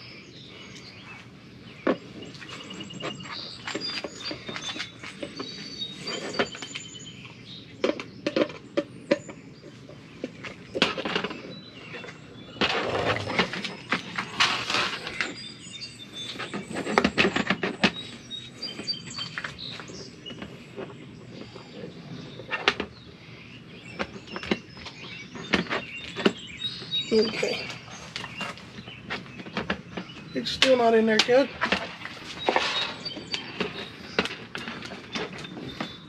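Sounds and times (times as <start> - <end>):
birds chirping: 0.0 - 36.0.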